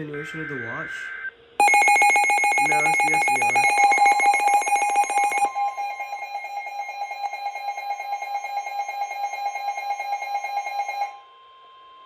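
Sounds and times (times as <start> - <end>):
rapid electronic beeping: 0.0 - 9.6
steady high tone: 0.0 - 11.4.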